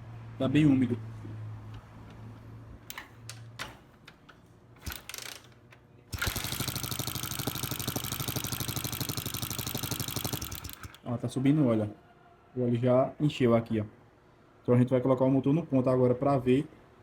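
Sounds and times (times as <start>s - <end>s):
motorcycle engine running: 6.2s - 11.0s.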